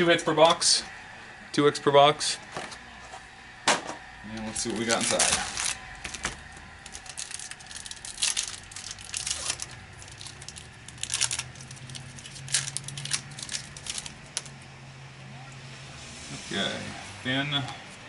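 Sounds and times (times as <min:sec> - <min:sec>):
packaging torn and crinkled: 0:04.7 - 0:14.6.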